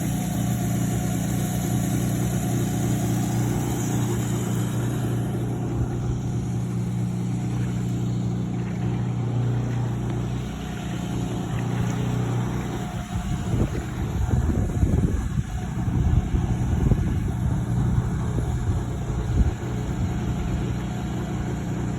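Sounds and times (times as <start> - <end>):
engine running steadily: 0.0 - 21.9.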